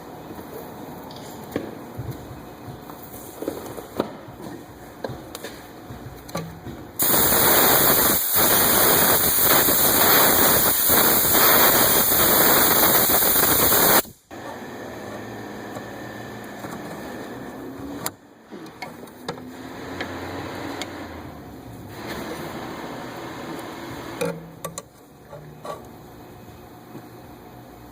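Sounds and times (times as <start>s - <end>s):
pressurized gas spray hiss: 7.0s - 14.2s.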